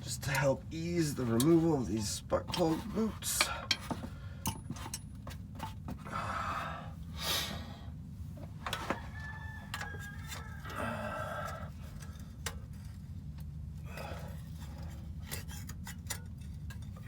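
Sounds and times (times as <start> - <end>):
steady low hum: 0.0 - 8.9.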